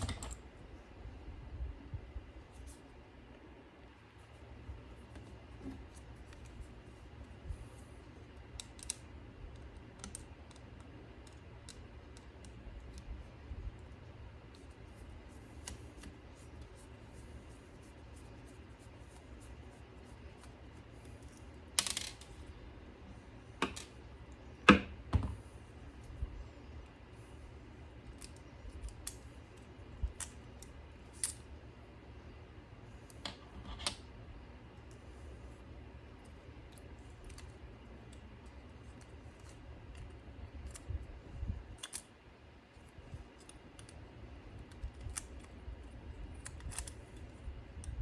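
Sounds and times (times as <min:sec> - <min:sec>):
faint low hum: 0:00.0 - 0:48.0
hand tools clicking and tapping: 0:23.6 - 0:23.9.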